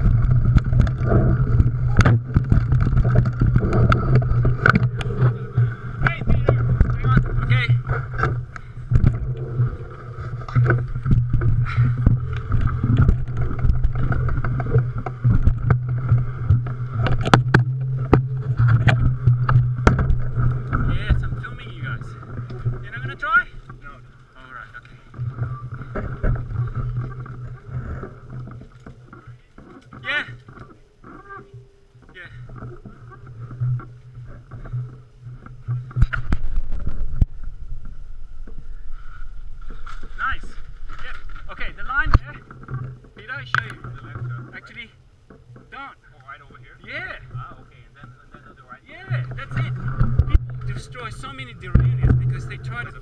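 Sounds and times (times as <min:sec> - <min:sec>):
bike knocks and rattles: 0:00.0 - 0:09.3, 0:10.4 - 0:24.0, 0:39.8 - 0:45.9
low rumble of bike on trail: 0:00.0 - 0:53.0.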